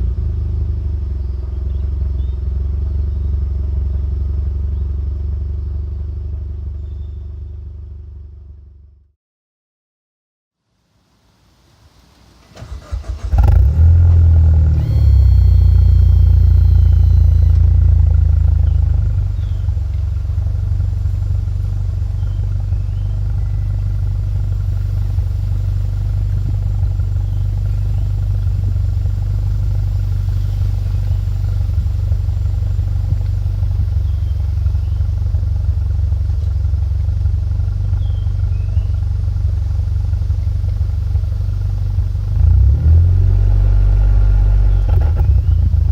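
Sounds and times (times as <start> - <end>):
car engine idling: 0.0 - 9.1, 12.4 - 45.9
engine cranking: 12.4 - 41.4.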